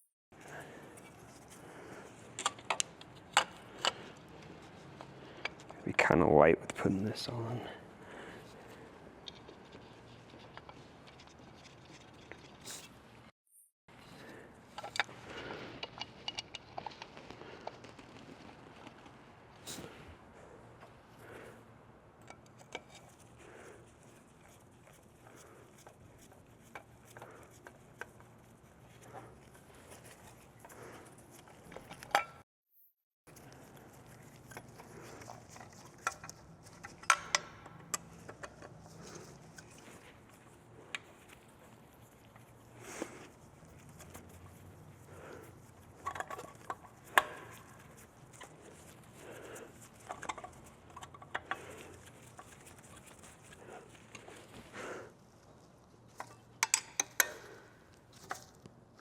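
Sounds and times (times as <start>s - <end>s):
soft handling noise: 0.4s - 13.3s, 22.2s - 32.4s, 33.3s - 59.0s
clicks and taps of small parts: 35.6s - 38.8s, 56.1s - 57.6s
light clicks of parts being fitted: 56.1s - 58.8s.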